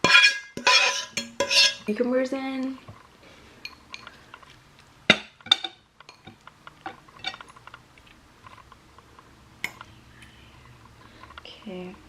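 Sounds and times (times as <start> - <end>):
utensils clinking on dishware: 0.0 - 1.9, 7.2 - 7.5.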